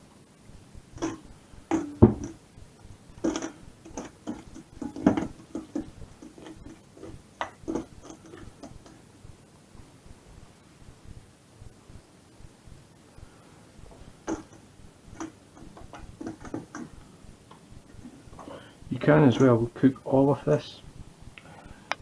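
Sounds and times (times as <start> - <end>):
kitchen items tapping on worktop: 1.0 - 2.4, 3.2 - 9.0, 14.3 - 14.6, 15.2 - 16.9.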